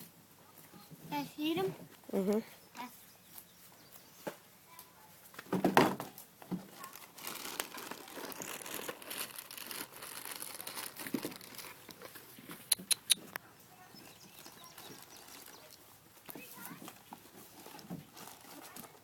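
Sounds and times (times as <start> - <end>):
plastic bag crinkling: 6.7 - 12.2, 14.4 - 15.8, 17.4 - 19.0
sharp clicks: 12.7 - 13.4.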